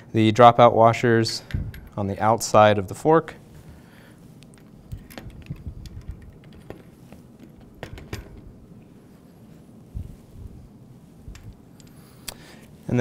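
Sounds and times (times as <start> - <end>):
small metal parts clicking: 4.4 - 8.4.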